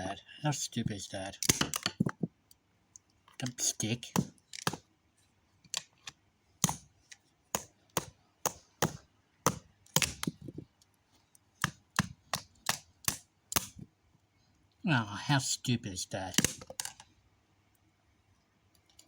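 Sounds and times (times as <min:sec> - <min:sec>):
knocks of hard objects: 0:01.4 - 0:02.4, 0:04.1 - 0:04.9, 0:06.6 - 0:06.9, 0:07.5 - 0:10.7, 0:11.6 - 0:13.9, 0:16.4 - 0:16.9.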